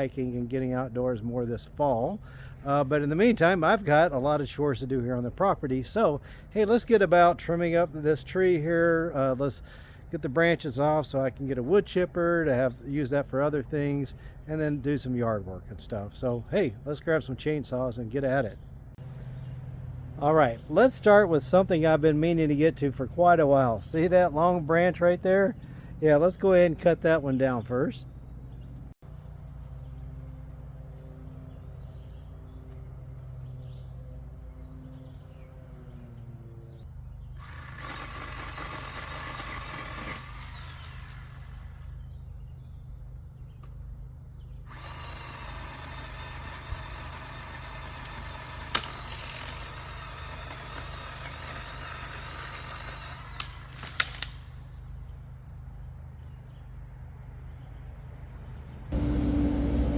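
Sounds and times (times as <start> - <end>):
pole chainsaw cutting branch: 37.4 - 42.0, 44.6 - 55.0
branch cracking: 46.9 - 54.9
steady low hum: 53.1 - 59.9.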